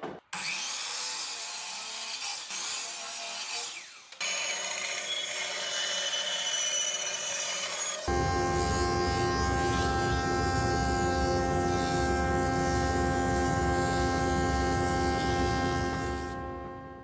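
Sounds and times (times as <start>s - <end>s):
power tool motor humming: 7.2s - 17.0s.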